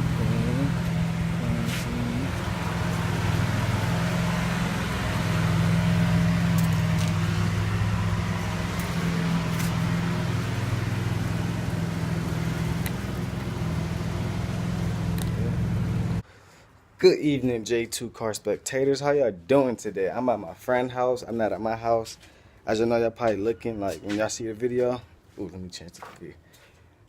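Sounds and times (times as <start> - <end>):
car engine idling: 0.0 - 16.2.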